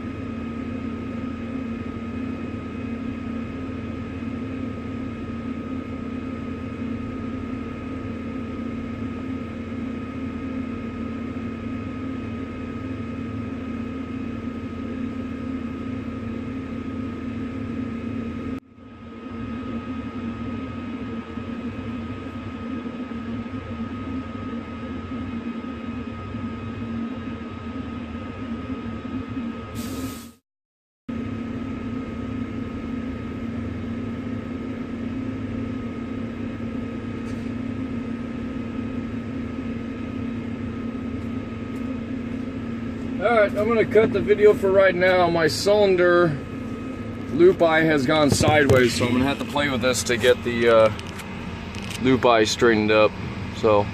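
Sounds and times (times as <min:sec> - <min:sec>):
thin high whine: 0:00.0 - 0:30.4, 0:31.1 - 0:53.9
truck engine running: 0:40.8 - 0:53.9.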